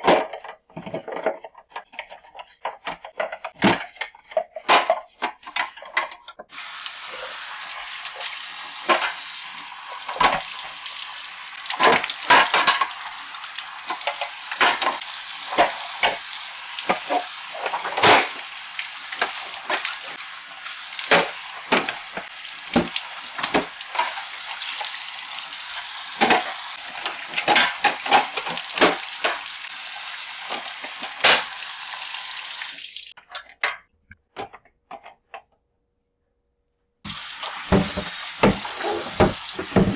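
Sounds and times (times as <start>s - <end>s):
plastic shelves knocking and clattering: 0.0s - 6.5s, 21.1s - 24.2s, 26.2s - 29.4s, 37.1s - 39.9s
tap water running into sink: 6.5s - 33.2s, 37.1s - 39.9s.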